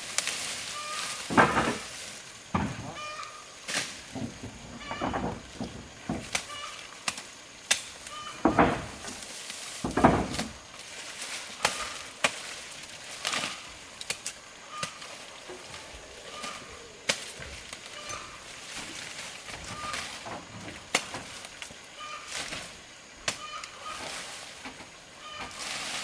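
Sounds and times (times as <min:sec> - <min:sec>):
rustling or scraping: 0:00.0 - 0:26.0
sharp knocks and clicks: 0:02.5 - 0:03.0, 0:04.1 - 0:06.5, 0:08.4 - 0:09.2, 0:09.8 - 0:10.5.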